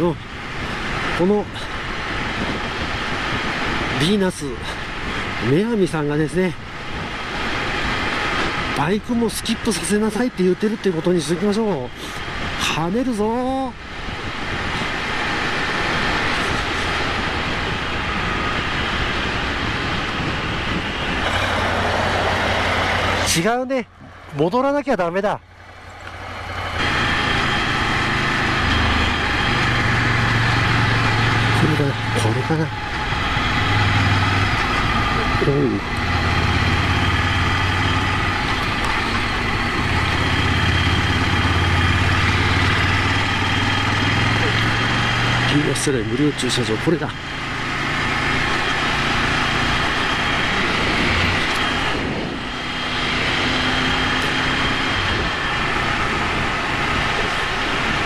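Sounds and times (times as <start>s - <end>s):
wind rush: 0.0s - 46.2s, 47.2s - 58.0s
road noise: 0.0s - 58.0s
motorcycle engine running: 25.4s - 45.3s, 47.2s - 58.0s.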